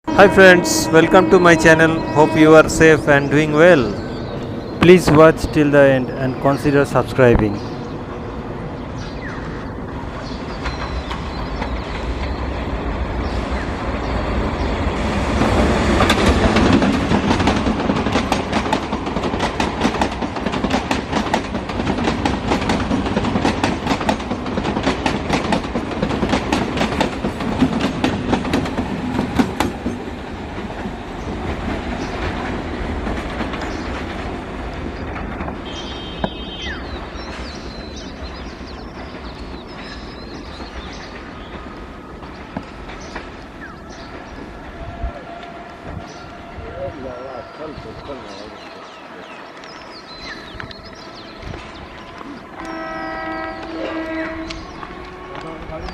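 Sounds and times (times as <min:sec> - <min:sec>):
train wheels clattering over rail joints: 0:14.4 - 0:36.5, 0:37.2 - 0:46.4.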